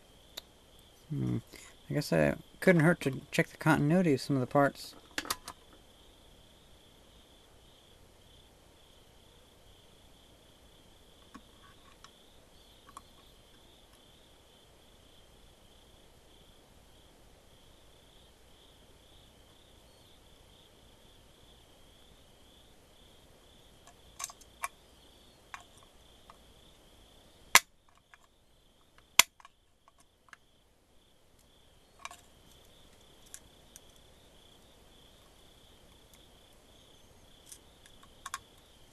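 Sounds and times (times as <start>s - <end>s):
cricket trill: 0.0s - 38.9s
clicks and taps of small tools: 23.9s - 24.7s, 37.5s - 38.4s.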